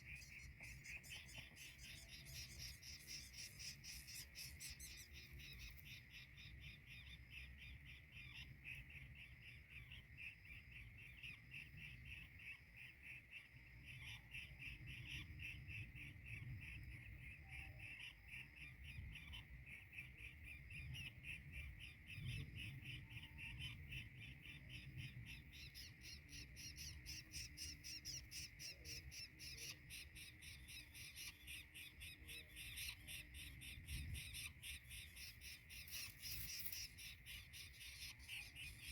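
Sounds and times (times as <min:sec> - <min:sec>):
insect chorus trilling: 0:00.0 - 0:38.9.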